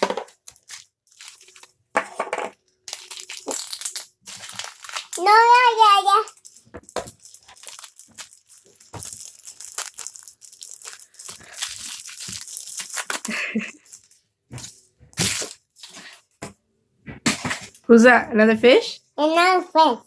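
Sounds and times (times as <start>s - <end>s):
plastic packaging crinkling: 0.0s - 16.3s
packaging ripping: 0.4s - 1.7s, 2.9s - 14.1s, 15.2s - 16.0s.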